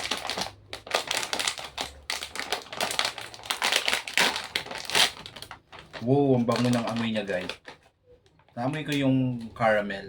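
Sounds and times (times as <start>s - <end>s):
plastic snack bag crinkling: 0.0s - 7.9s.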